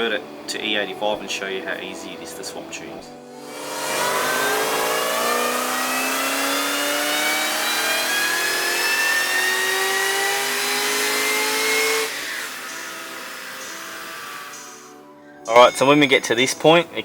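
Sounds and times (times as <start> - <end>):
car engine at full throttle: 3.4 - 15.0
supercharger whine: 3.4 - 15.0.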